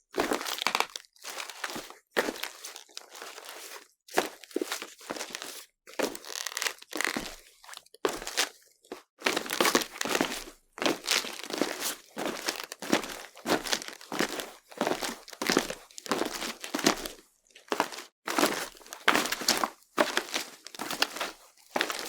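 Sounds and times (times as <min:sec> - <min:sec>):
footsteps crunching: 0:09.3 - 0:22.0.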